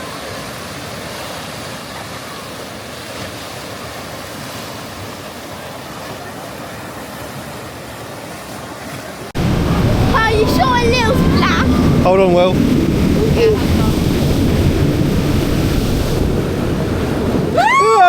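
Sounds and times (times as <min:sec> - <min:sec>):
water rushing: 0:00.0 - 0:18.0.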